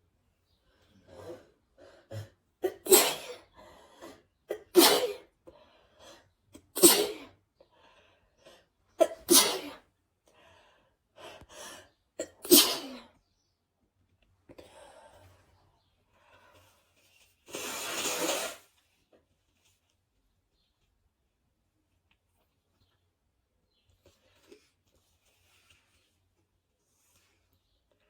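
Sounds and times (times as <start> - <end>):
person sneezing: 2.1 - 5.3, 6.8 - 7.3, 9.0 - 9.8, 12.2 - 13.1.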